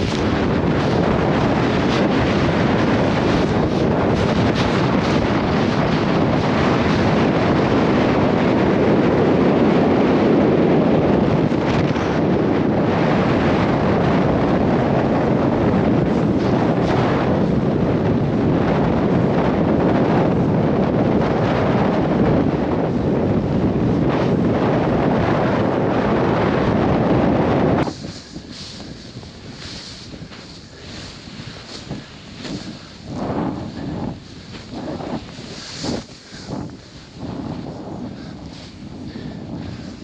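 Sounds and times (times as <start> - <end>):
wind buffeting microphone: 0.0 - 40.0
hiss of skis in deep snow: 27.8 - 40.0.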